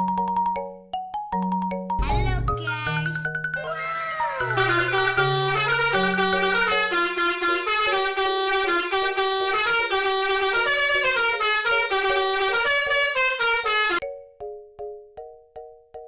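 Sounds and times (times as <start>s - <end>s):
multi-tone musical bus horn: 4.5s - 14.0s.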